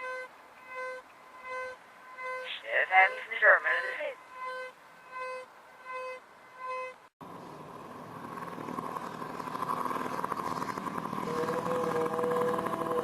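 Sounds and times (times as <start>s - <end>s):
short electronic beeps: 0.0s - 7.0s
noisy vehicle-like drone: 0.0s - 13.0s
steady tone: 0.0s - 13.0s.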